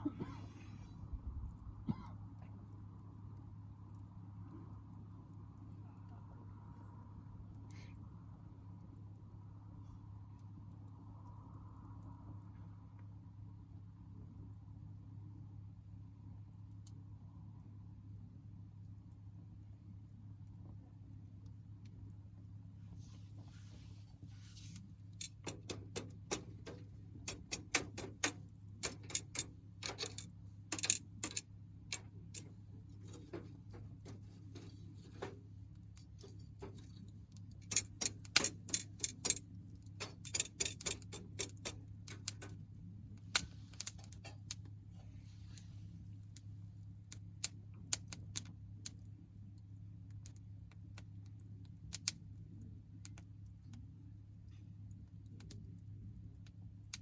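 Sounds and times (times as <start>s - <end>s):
steady low hum: 0.0s - 57.0s
wood fire crackling: 18.5s - 57.0s.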